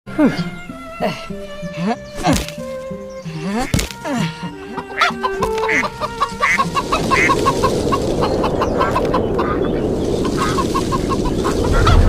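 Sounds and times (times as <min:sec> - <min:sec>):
chickens clucking: 0:00.2 - 0:12.0
strong wind rushing: 0:05.9 - 0:12.0.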